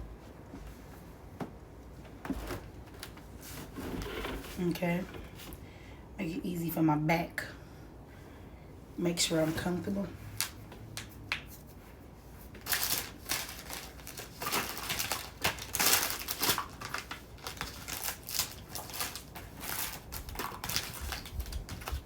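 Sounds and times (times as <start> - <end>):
plastic packaging crinkling: 12.5 - 22.0.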